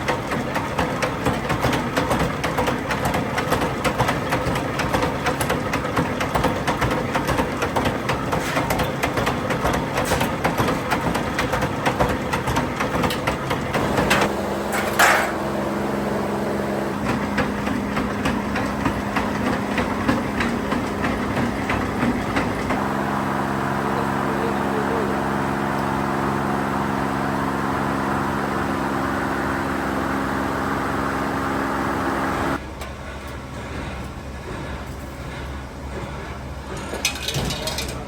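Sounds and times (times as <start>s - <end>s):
workshop machinery running: 0.0s - 38.0s
rapid metallic clatter: 32.8s - 38.0s.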